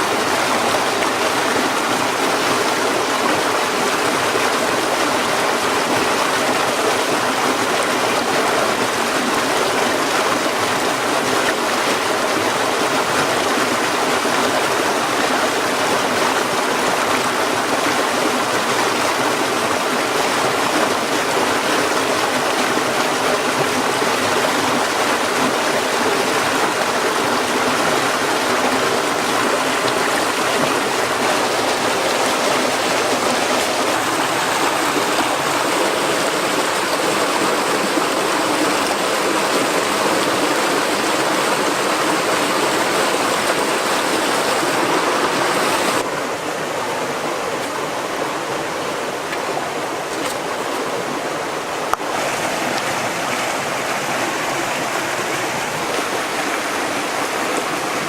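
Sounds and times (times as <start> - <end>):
stream water rushing: 0.0 - 58.0.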